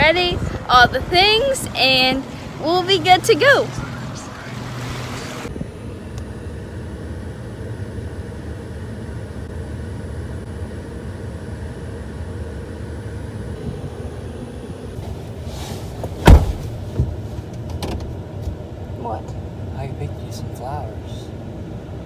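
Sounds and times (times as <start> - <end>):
vehicle rumbling: 0.0 - 8.0, 12.8 - 22.0
sharp thump: 16.1 - 17.2.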